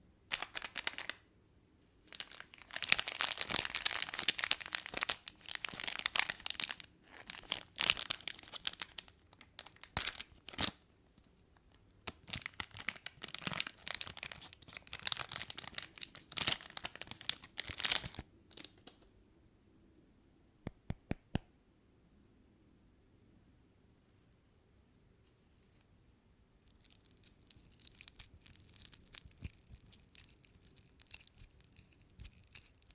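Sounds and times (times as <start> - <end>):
plastic wrapper tearing and crinkling: 0.3 - 1.2, 2.1 - 10.8, 12.1 - 18.9, 26.7 - 32.9.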